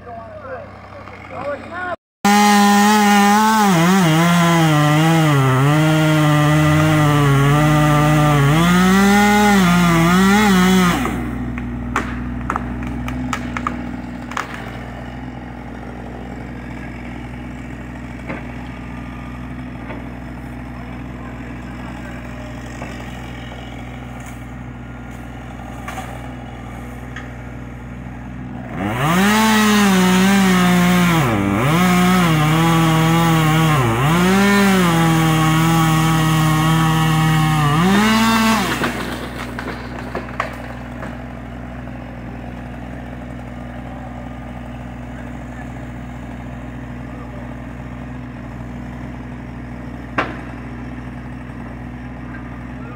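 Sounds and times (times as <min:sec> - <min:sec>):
chainsaw revving and cutting: 0:00.7 - 0:52.9
engine idling: 0:11.0 - 0:29.0, 0:38.7 - 0:52.9.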